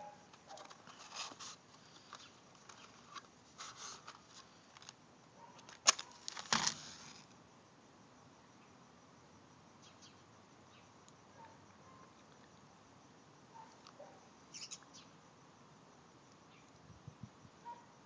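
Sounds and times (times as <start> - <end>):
handling rustles and clicks: 0.2 - 7.3.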